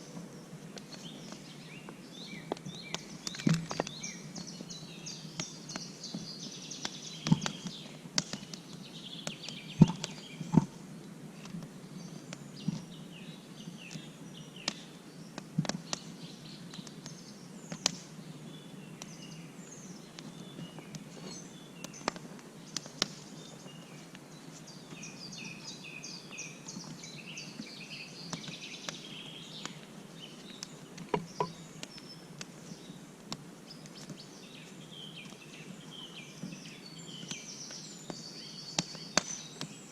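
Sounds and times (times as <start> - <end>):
sharp snaps and cracks: 0.0 - 13.0, 13.8 - 18.3, 19.0 - 25.5, 26.3 - 34.3, 35.1 - 39.9
small birds chirping: 0.0 - 39.9.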